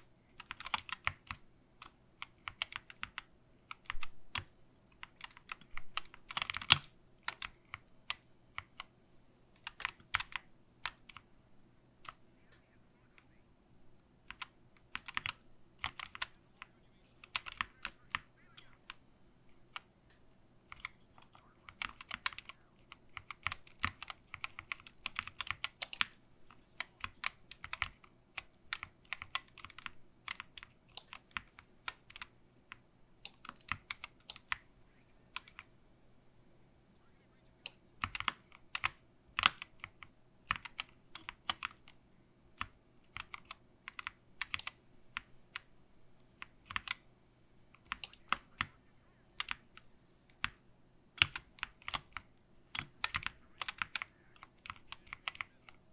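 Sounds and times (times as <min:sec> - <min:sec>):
keyboard keystroke clacks: 0:00.0 - 0:08.9, 0:51.2 - 0:55.8.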